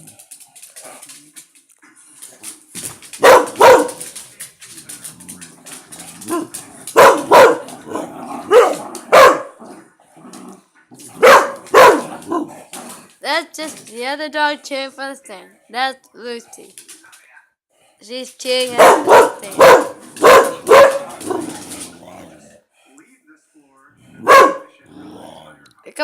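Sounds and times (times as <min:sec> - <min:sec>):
dog barking excitedly: 0:03.1 - 0:04.2, 0:06.2 - 0:09.6, 0:11.1 - 0:12.6, 0:18.4 - 0:22.0, 0:24.2 - 0:24.7.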